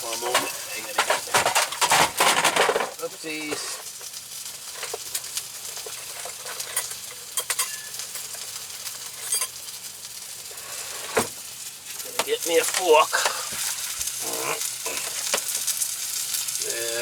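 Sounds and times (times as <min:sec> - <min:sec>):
food sizzling in a frying pan: 0:00.0 - 0:17.0
small pops and crackles: 0:02.9 - 0:09.0, 0:11.2 - 0:17.0.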